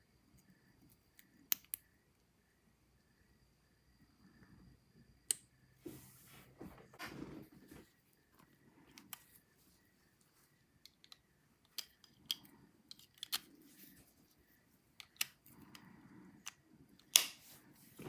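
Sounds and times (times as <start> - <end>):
small objects clicking: 10.8 - 13.6, 15.0 - 15.8.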